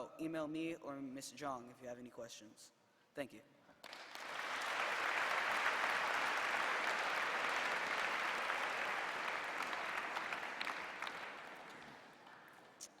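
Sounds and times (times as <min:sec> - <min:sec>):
audience applauding: 0:03.8 - 0:12.7.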